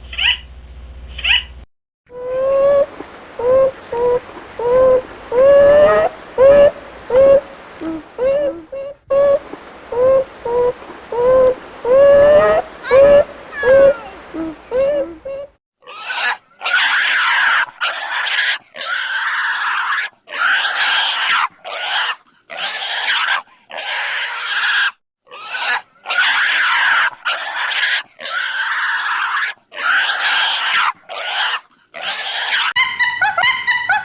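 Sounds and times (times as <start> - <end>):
animal harsh raspy calls: 15.8 - 34.0.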